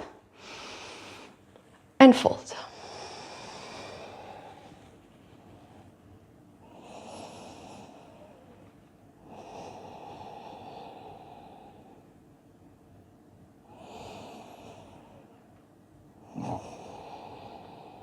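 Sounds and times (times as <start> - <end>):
person breathing slowly: 0.0 - 1.4, 2.7 - 6.0, 6.6 - 12.2, 13.6 - 15.4, 16.2 - 18.0.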